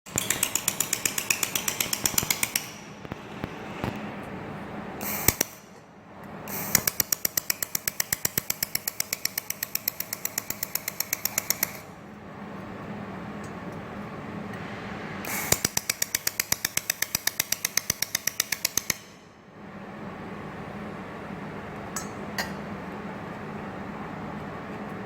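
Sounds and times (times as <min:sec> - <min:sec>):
laser welder snapping: 0:05.0 - 0:05.6.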